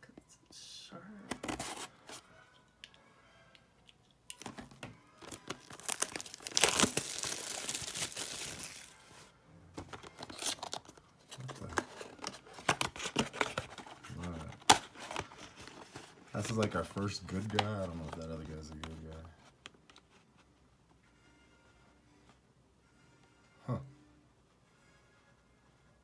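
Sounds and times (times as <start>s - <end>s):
wrapping tearing and crinkling: 5.2s - 9.2s, 10.0s - 16.7s.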